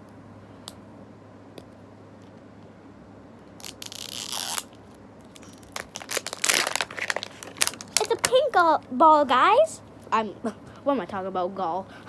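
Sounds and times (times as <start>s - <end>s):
wrapping tearing and crinkling: 3.6s - 8.6s.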